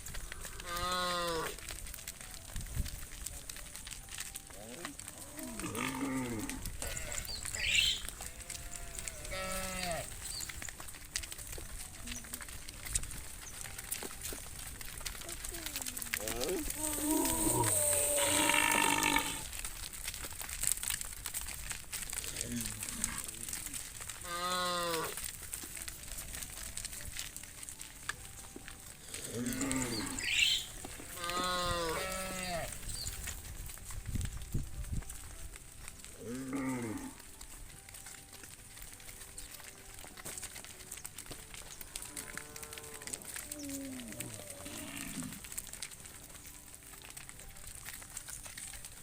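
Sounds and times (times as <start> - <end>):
cow mooing: 5.4 - 10.2, 17.2 - 19.5, 29.3 - 30.4, 31.1 - 32.9.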